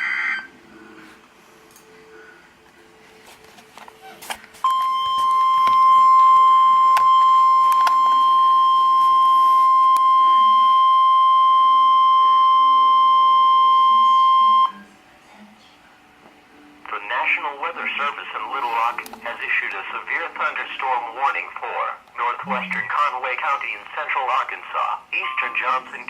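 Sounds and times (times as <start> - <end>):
high alert beep: 22.4 - 22.9.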